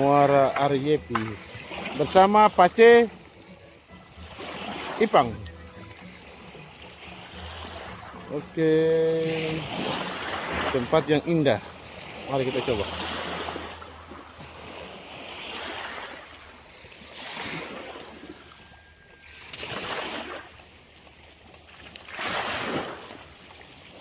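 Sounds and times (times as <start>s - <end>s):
small waves washing in: 0.0s - 24.0s.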